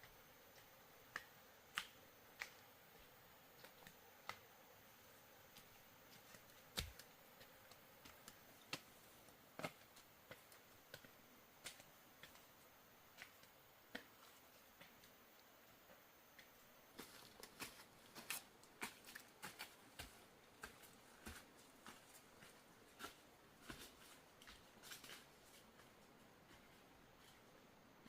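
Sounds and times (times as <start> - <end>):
faint sharp clicks and taps: 0.0 - 4.6, 5.4 - 9.0, 9.6 - 22.1.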